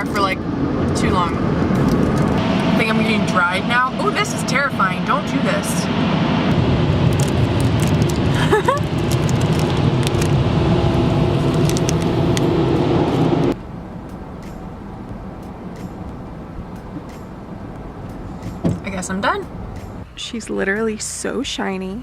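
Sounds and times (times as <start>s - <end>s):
car wash air dryer blowers: 2.4s - 13.6s.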